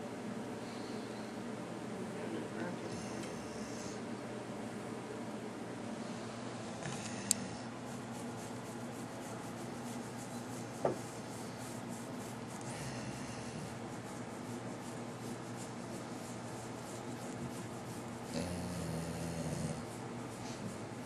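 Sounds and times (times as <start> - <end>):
dog snoring: 12.6 - 13.8, 18.2 - 20.0.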